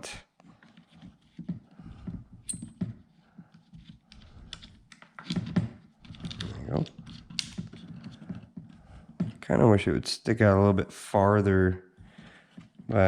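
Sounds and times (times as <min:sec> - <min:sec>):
clicks and taps of handling a rifle: 0:02.4 - 0:09.4.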